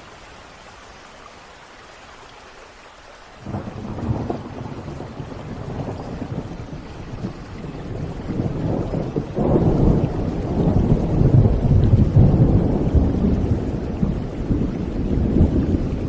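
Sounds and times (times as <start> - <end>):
steady rain: 0.0 - 16.0
rolling thunder: 3.4 - 16.0.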